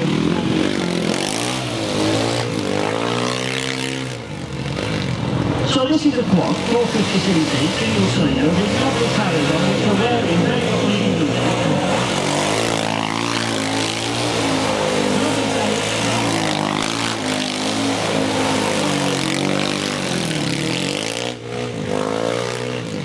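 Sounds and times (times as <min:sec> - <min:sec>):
quad bike engine revving: 0:00.0 - 0:23.0.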